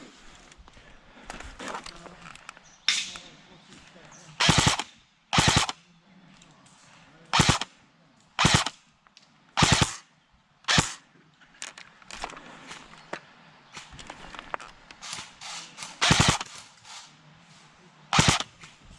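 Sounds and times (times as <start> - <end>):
airsoft rifle full-auto bursts: 4.4 - 5.8, 7.3 - 7.7, 8.4 - 8.8, 9.6 - 10.1, 10.7 - 11.0, 15.0 - 17.1, 18.1 - 18.6
faint scattered shots: 4.4 - 5.9, 7.3 - 7.8, 8.4 - 8.8, 9.6 - 10.1, 10.7 - 11.0, 15.0 - 17.1, 18.1 - 18.8.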